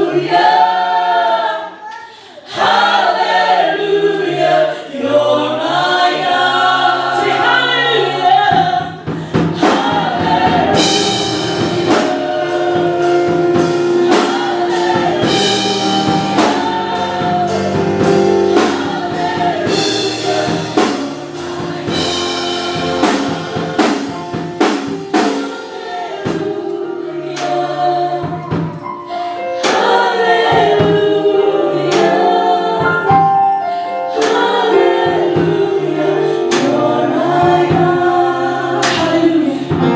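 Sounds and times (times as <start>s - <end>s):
gospel choir singing: 0.0s - 39.9s
steady drum beat: 8.5s - 26.7s.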